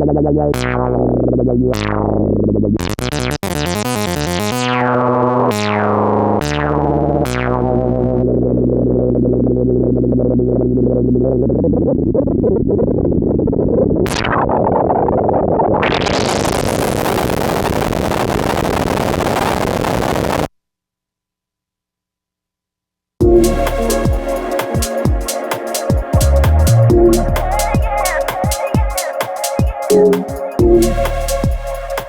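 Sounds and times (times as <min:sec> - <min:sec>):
plucky synthesizer notes: 0:00.0 - 0:11.1, 0:23.2 - 0:32.0
synthesizer filter sweep: 0:00.0 - 0:11.4, 0:23.2 - 0:32.0
held low synthesizer note: 0:23.2 - 0:28.9, 0:29.9 - 0:32.0.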